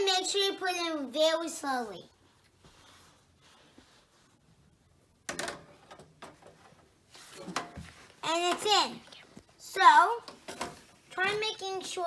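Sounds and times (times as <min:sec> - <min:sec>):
scraping and small knocks: 0:10.2 - 0:12.0.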